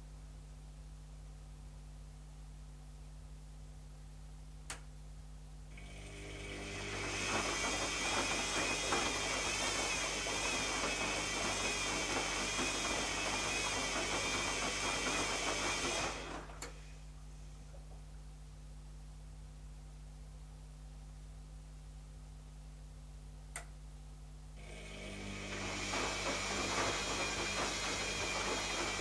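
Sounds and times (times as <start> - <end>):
washing machine motor whine: 5.7 - 17.0, 24.6 - 29.0
drum churning: 25.5 - 29.0.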